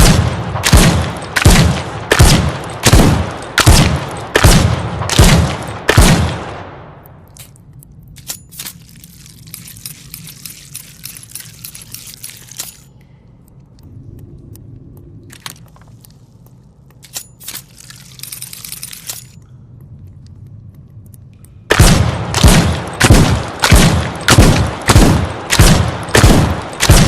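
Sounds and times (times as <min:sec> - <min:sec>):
low steady rumble: 0:00.0 - 0:27.0
metallic clicks and jingling rattles: 0:07.0 - 0:13.9, 0:14.9 - 0:21.7.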